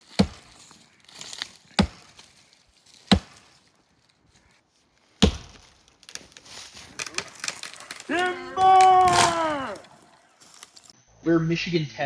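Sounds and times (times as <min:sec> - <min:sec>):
axe chopping wood: 0:00.0 - 0:02.4, 0:03.0 - 0:03.6, 0:05.2 - 0:06.4.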